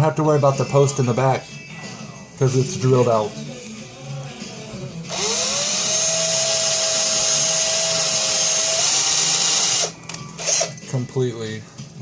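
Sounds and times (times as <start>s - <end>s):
small electric drill whining: 5.1s - 10.8s.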